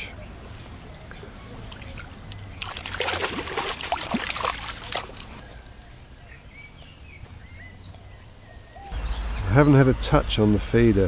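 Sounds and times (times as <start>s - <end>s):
water splashing and sloshing: 0.4s - 5.4s.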